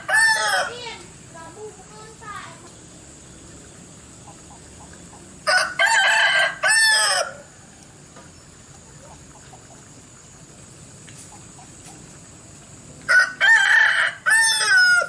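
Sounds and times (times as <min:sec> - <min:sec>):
rooster crowing: 0:00.0 - 0:00.8, 0:05.4 - 0:07.8, 0:13.1 - 0:15.0.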